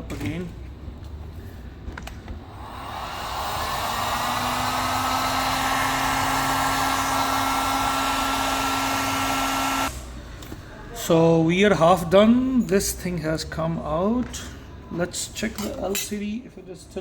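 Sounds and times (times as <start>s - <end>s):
heat gun whine: 2.4s - 10.0s.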